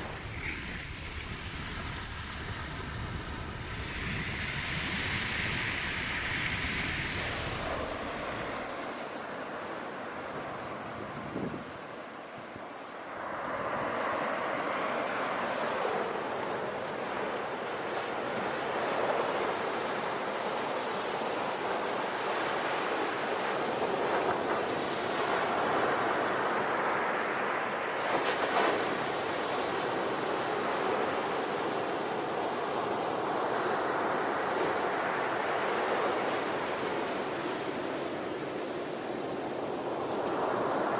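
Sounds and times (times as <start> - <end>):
hiss of breaking water: 0.0 - 8.8
waves washing onto shore: 0.0 - 40.9.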